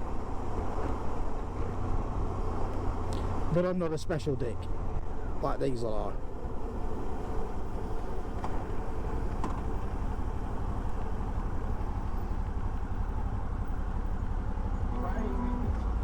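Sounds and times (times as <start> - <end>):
road and wind noise: 0.0 - 16.0
motorcycle engine running: 6.6 - 16.0.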